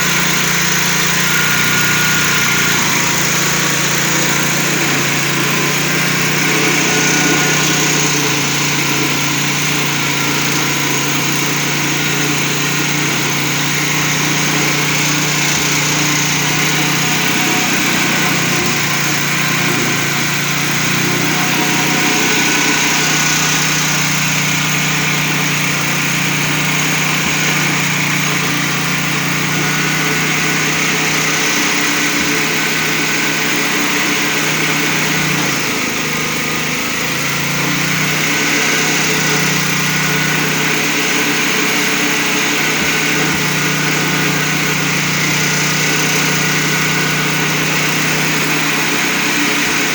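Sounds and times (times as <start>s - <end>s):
pulping machine whirring: 0.0s - 49.9s.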